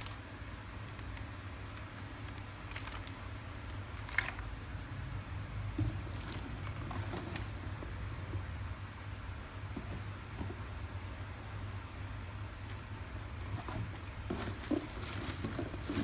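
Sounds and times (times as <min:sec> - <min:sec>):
steady low hum: 0:00.0 - 0:16.0
handling knocks: 0:05.7 - 0:08.5, 0:13.4 - 0:16.0.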